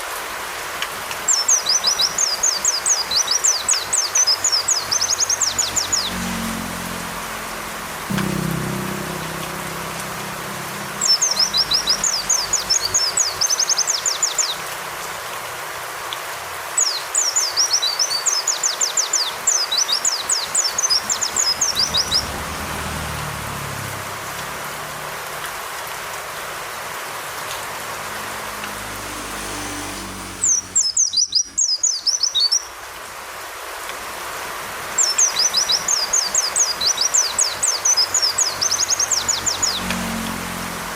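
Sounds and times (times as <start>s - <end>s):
rain falling: 14.5s - 17.0s
bird chattering song: 30.4s - 32.7s.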